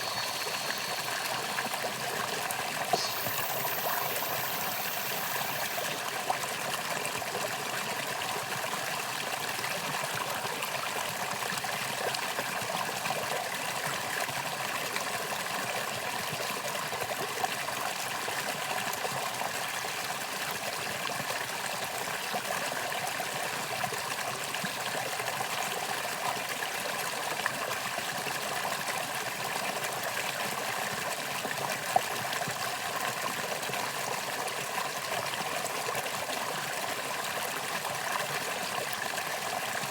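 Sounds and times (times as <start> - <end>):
stream flowing: 0.0 - 12.2.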